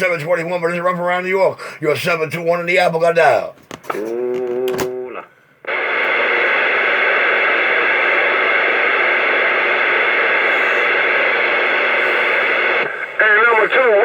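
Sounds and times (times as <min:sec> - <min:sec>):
radio static hiss: 0:03.9 - 0:14.0.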